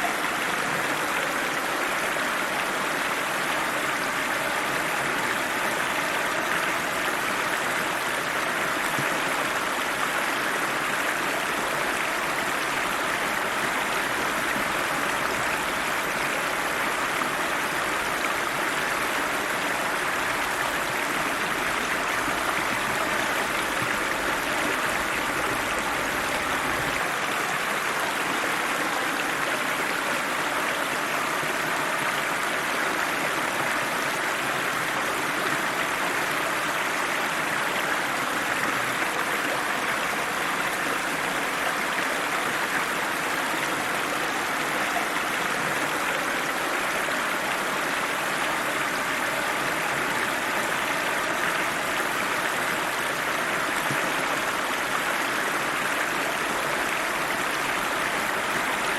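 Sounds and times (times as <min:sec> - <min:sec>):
river water rushing over rocks: 0:00.0 - 0:58.9.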